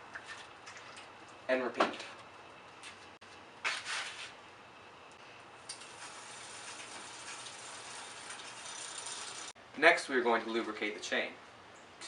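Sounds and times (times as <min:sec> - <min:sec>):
bicycle freewheel clicking: 0:05.7 - 0:09.5.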